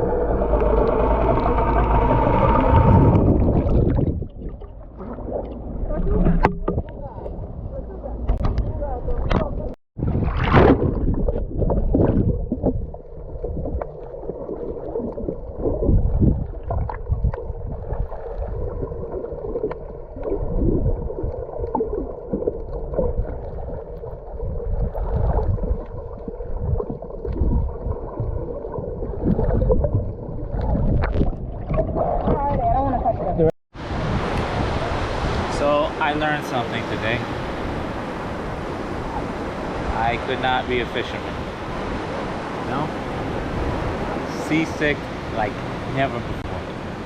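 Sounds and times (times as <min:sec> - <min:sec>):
faint motor hum: 0:00.0 - 0:03.4
water splashing around boat: 0:00.0 - 0:47.0.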